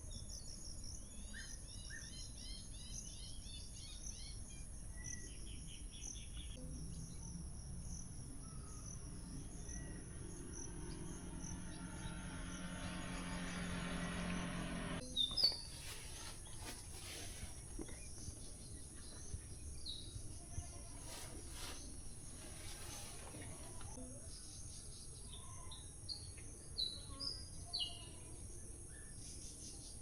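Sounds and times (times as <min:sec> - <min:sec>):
insects droning and chirping: 0:02.6 - 0:14.6
low hum: 0:06.6 - 0:19.2.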